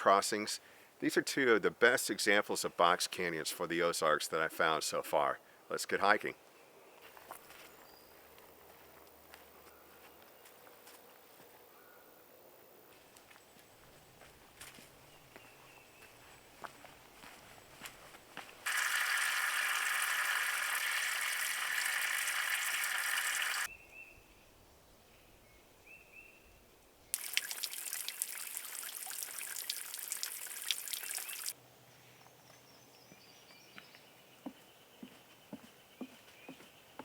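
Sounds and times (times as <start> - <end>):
stream trickling and splashing: 18.6 - 23.7, 27.1 - 31.6.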